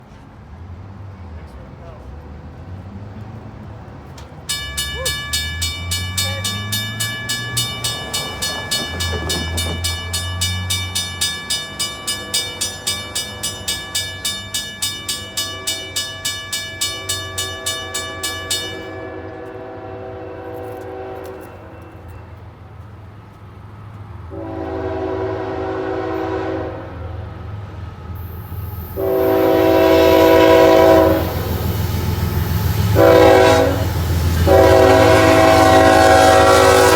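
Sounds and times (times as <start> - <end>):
diesel locomotive rumble: 0.2 - 36.9
railroad crossing bell ringing: 4.4 - 22.4, 28.2 - 36.9
locomotive horn blasts: 4.6 - 12.6, 18.8 - 22.1, 24.3 - 27.0, 28.8 - 36.9.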